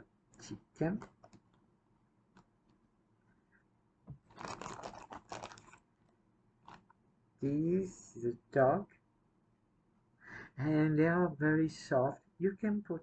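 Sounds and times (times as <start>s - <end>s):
rustling and crinkling: 4.1s - 7.0s.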